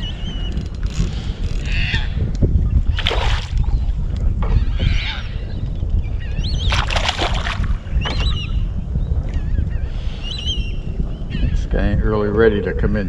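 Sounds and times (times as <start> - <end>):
wind rumble on microphone: 0.0 - 13.0
fish splashing at surface: 3.0 - 3.6, 6.7 - 7.8
wavering bird calls: 7.8 - 8.7.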